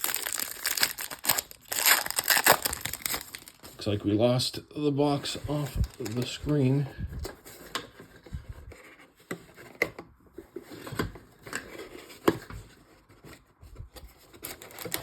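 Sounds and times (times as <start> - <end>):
trading cards rustling: 0.0 - 4.2, 5.0 - 8.3.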